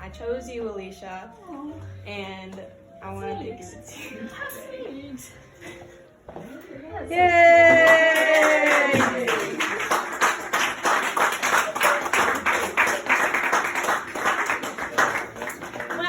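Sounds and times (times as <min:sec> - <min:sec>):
high-pitched cheer: 0:07.3 - 0:09.9
people clapping: 0:07.6 - 0:16.0.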